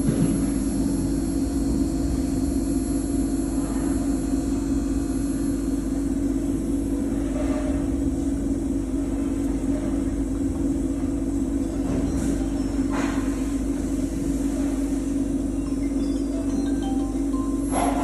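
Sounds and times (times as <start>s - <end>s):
grinder machine humming: 12.3s - 18.0s.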